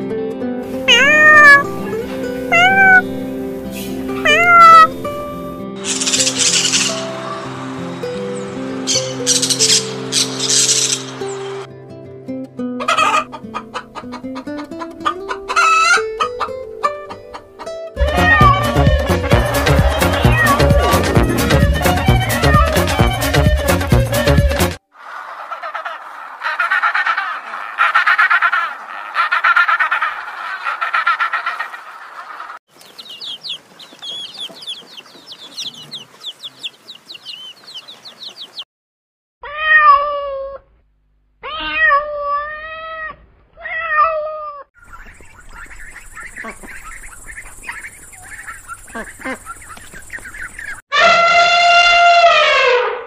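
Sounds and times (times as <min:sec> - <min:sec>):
cat meowing: 0:00.8 - 0:03.2, 0:04.2 - 0:05.0, 0:18.0 - 0:18.8, 0:22.2 - 0:22.8, 0:39.4 - 0:40.6, 0:41.4 - 0:44.7
animal calls: 0:00.8 - 0:07.3, 0:18.0 - 0:23.2, 0:25.0 - 0:38.6, 0:41.4 - 0:50.8
loud call falling in pitch: 0:50.9 - 0:53.0.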